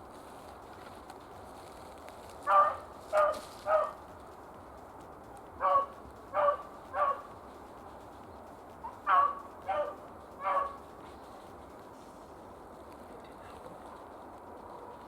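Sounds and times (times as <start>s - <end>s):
dog barking: 2.4s - 4.0s, 5.6s - 7.3s, 8.9s - 10.8s.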